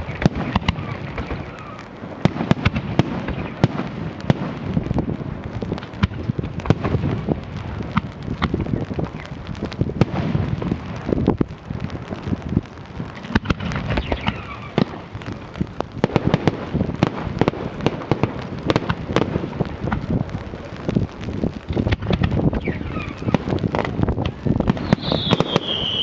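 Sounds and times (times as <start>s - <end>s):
falling firework whistle: 0.0s - 3.8s, 13.4s - 15.0s, 21.9s - 23.6s, 24.6s - 26.0s
fireworks bangs and crackles: 0.0s - 26.0s.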